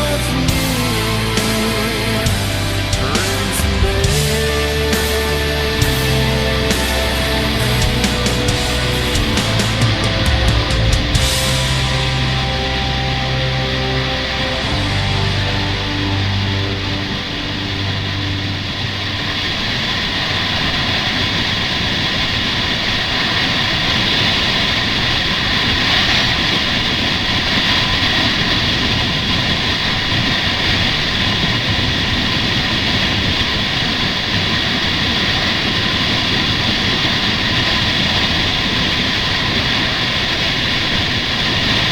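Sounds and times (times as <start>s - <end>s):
motorcycle engine running: 0.4s - 20.1s.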